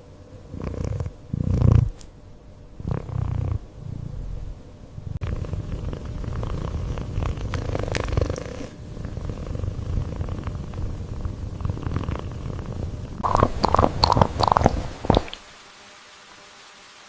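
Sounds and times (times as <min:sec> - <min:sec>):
kitten purring: 0:00.5 - 0:02.1, 0:02.8 - 0:15.4.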